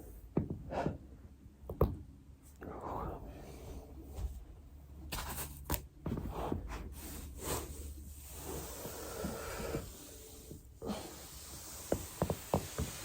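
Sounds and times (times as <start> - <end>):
fabric rubbing against foam: 6.2 - 13.0.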